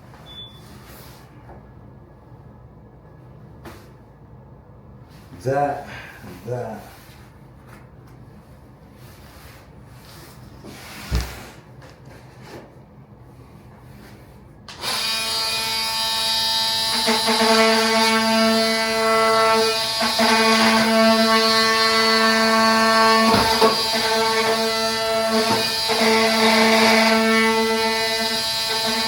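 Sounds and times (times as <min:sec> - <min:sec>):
power tool cutting plank: 0:14.7 - 0:29.0.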